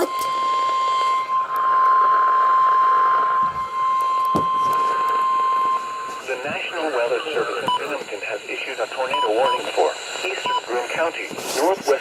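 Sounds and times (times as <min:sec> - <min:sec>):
warning alarm tone from small speaker: 0:00.0 - 0:08.2.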